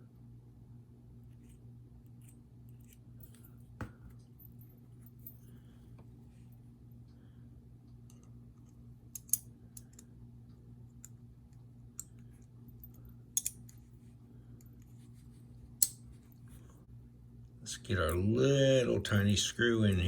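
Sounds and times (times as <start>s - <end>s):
steady low hum: 0.0s - 20.0s
metal knife parts clicking: 9.1s - 10.0s, 12.8s - 13.8s.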